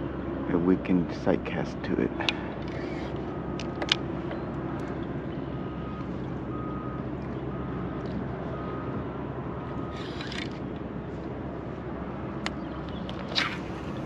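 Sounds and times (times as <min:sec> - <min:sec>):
low mechanical hum: 0:00.0 - 0:14.0
vehicle reversing alarm beeping: 0:03.2 - 0:03.6, 0:04.2 - 0:10.2.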